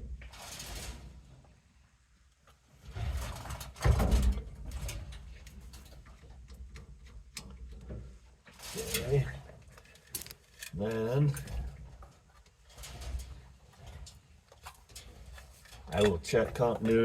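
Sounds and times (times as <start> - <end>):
scraping slide: 0.2 - 1.3
heavy clunk: 3.0 - 5.3
small clicks and rattles: 3.3 - 17.0.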